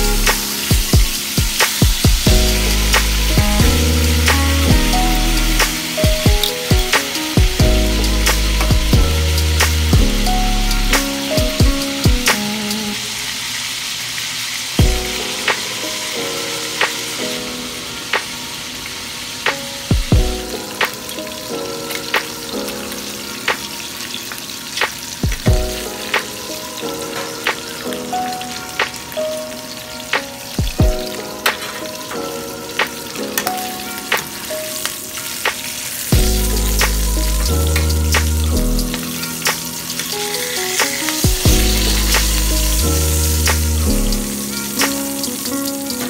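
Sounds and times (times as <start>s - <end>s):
background music with heavy bass: 0.0s - 13.0s, 36.1s - 46.0s
meat sizzling in a pan: 0.0s - 46.0s
oil popping and crackling: 0.0s - 46.0s.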